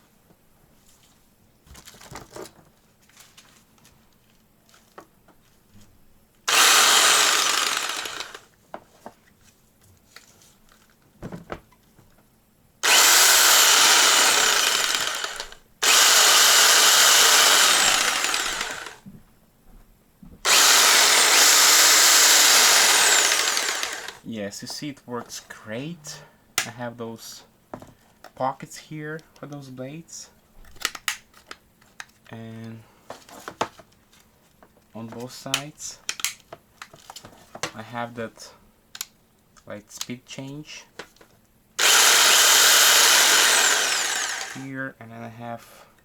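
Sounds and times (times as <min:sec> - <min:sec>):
jigsaw running: 0:06.5 - 0:08.5, 0:12.8 - 0:19.0, 0:20.4 - 0:24.2, 0:41.8 - 0:44.7
quiet clicks and handling: 0:38.9 - 0:41.5.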